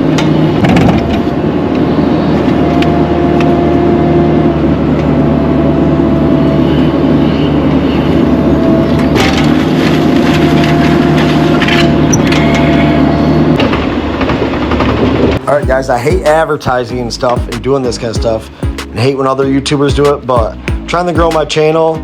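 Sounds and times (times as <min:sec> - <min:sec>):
diesel excavator engine running: 0:00.0 - 0:19.9
faint wavering whine: 0:01.3 - 0:09.5.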